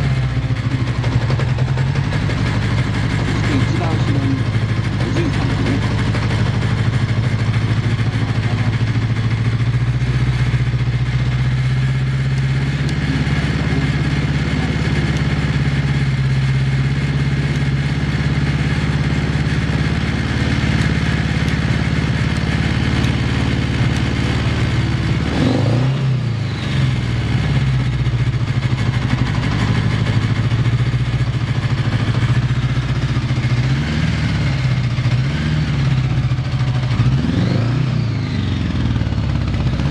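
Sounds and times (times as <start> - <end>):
motorcycle engine idling: 0.0 - 39.9.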